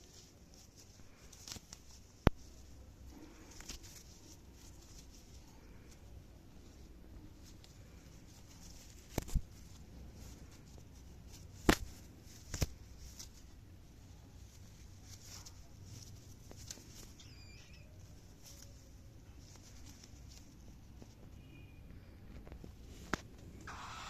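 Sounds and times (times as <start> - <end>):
cockatiel chirp: 17.2 - 18.0, 23.6 - 24.0.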